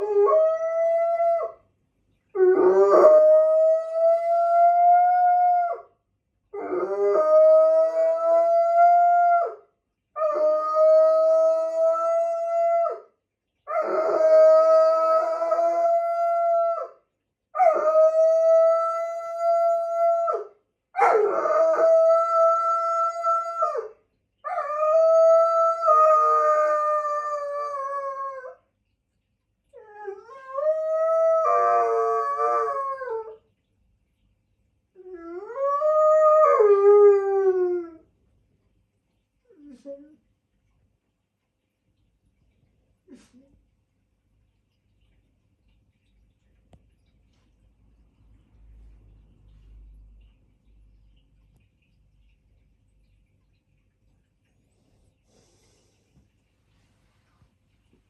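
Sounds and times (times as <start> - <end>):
dog howling: 29.8 - 33.4.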